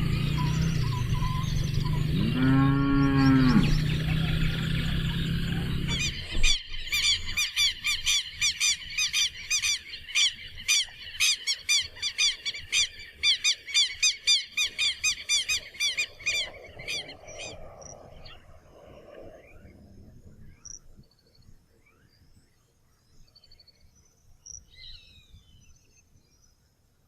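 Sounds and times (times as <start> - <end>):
bird chirping: 0.0 - 18.4
cow mooing: 2.0 - 4.3.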